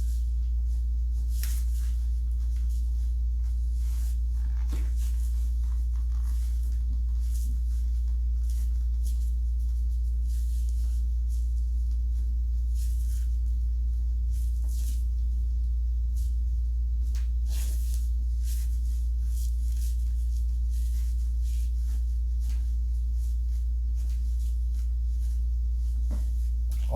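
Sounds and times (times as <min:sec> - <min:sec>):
low electrical hum: 0:00.0 - 0:26.9.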